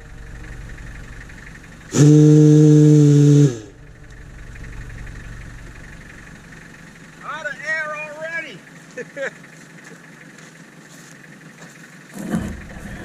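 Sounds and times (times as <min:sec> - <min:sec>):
ship horn blast: 0:01.9 - 0:03.8.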